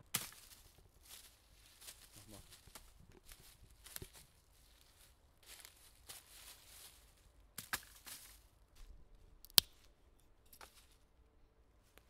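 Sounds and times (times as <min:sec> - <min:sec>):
rustling in undergrowth: 0:00.2 - 0:09.8, 0:10.6 - 0:11.1.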